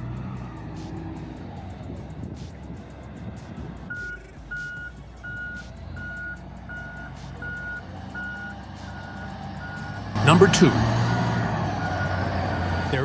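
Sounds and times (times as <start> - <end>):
diesel engine rumble: 0.0 - 13.0
reversing alarm beeping: 3.9 - 13.0.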